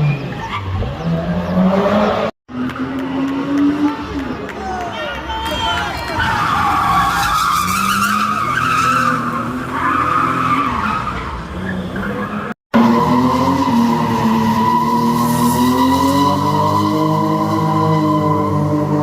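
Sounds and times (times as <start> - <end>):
tyres squealing in a skid: 5.4 - 19.0.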